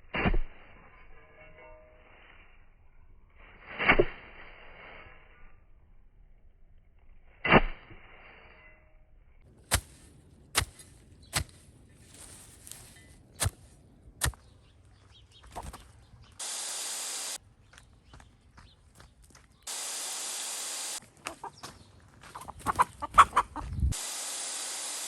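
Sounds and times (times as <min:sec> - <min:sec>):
short steady hiss: 0:16.4 - 0:17.4, 0:19.7 - 0:21.0, 0:24.0 - 0:25.0.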